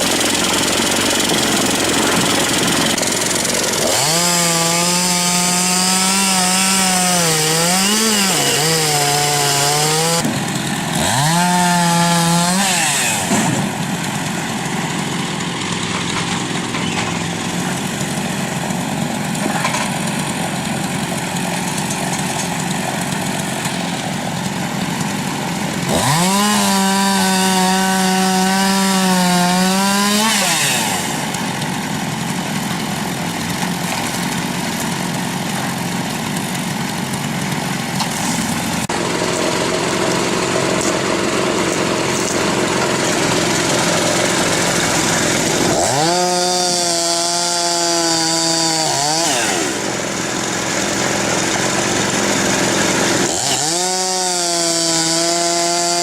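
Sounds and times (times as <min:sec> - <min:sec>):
machine engine running: 0:00.0 - 0:03.9, 0:35.4 - 0:45.9
power saw cutting wood: 0:00.0 - 0:56.0.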